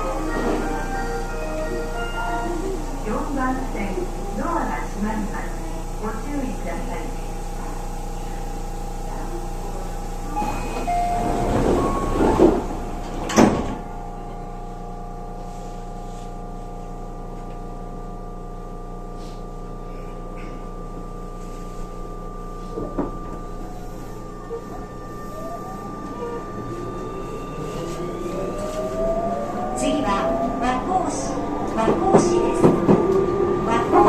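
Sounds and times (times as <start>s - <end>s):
train electrical hum: 0.0s - 34.0s
sliding train doors rattling: 10.4s - 14.0s, 26.1s - 34.0s.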